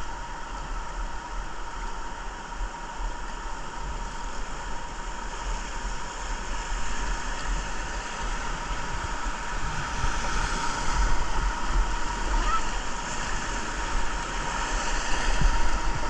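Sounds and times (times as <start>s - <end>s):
river whitewater rushing: 0.1s - 16.0s
wind buffeting microphone: 3.7s - 16.0s.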